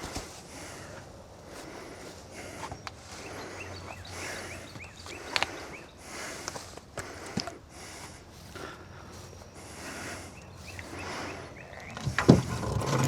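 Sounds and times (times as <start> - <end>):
wooden logs knocking: 11.9 - 13.0.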